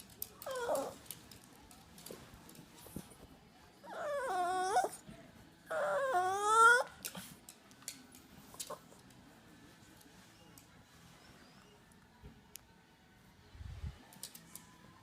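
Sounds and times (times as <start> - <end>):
small dog whining: 0.4 - 1.0, 3.9 - 5.0, 5.7 - 7.0.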